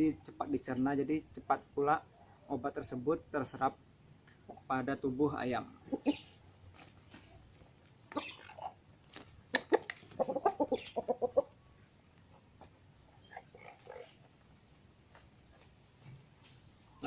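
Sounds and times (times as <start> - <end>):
rooster clucking: 5.7 - 6.4, 8.1 - 14.4.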